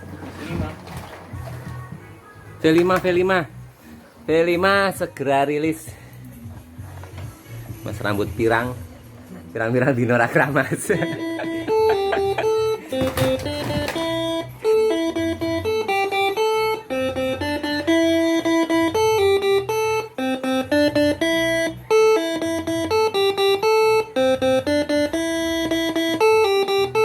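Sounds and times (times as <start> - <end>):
electric air horn melody: 10.9 - 27.0.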